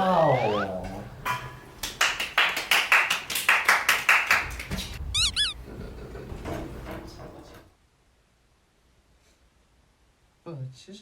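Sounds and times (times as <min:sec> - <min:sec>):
high squeaky chirps: 0:00.1 - 0:00.8, 0:05.0 - 0:05.6.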